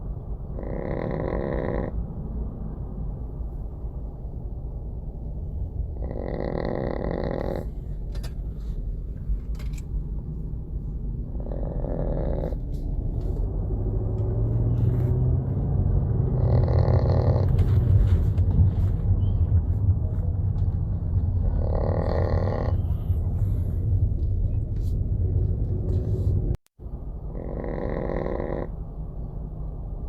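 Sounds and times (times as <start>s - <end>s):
steady low rumble: 0.0s - 30.0s
small dog snoring: 0.6s - 2.0s, 6.0s - 7.7s, 11.3s - 12.6s, 16.4s - 17.6s, 21.4s - 23.0s, 27.3s - 28.7s.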